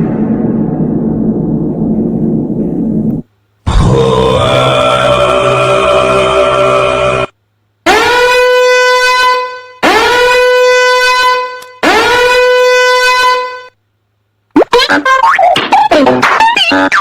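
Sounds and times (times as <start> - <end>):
sustained pitched tone: 3.7 - 7.3
brassy horn blasts: 7.9 - 13.7.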